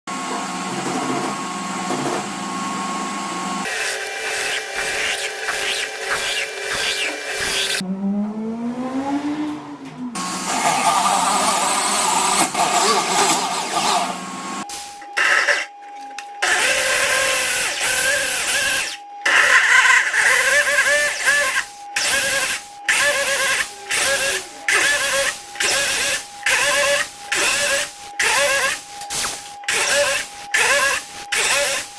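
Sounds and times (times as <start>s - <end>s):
electric drill boring into wood: 3.6s - 7.8s, 10.2s - 14.2s, 15.2s - 15.7s, 16.4s - 31.9s.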